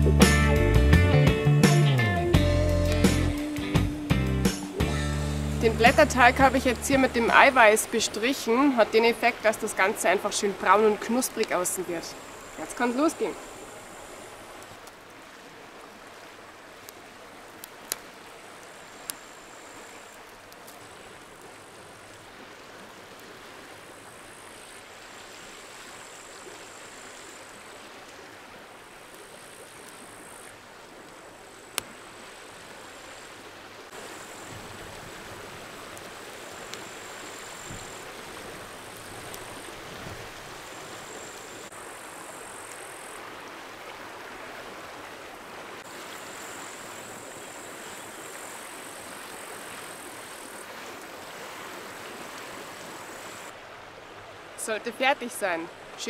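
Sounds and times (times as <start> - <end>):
campfire wood popping: 17.6 - 19.2, 20.3 - 21.5, 37.7 - 39.8.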